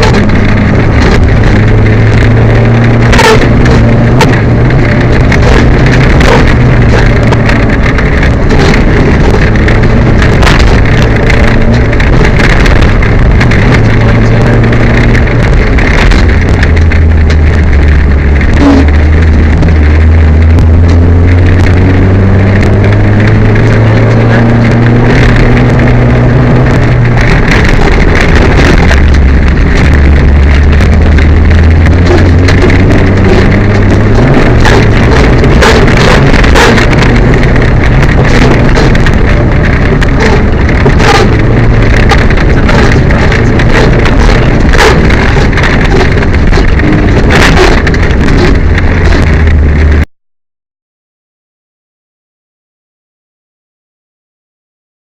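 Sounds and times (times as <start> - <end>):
short knocks and clatters: 0.0 - 21.8
rally car engine revving: 0.0 - 50.1
road and wind noise: 0.0 - 50.1.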